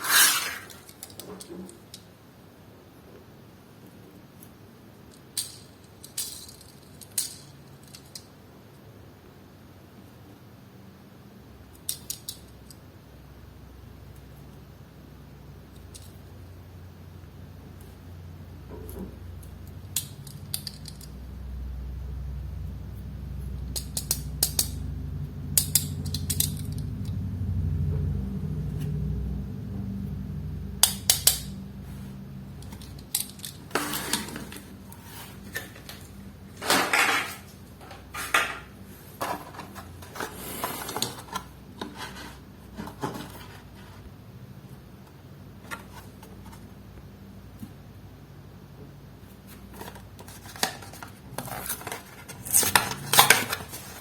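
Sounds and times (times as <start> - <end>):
clicks of small toy cars: 0.1 - 2.1, 5.1 - 8.4, 11.7 - 12.8, 19.4 - 21.1, 23.7 - 24.8, 25.6 - 26.9
low hum: 16.4 - 41.8.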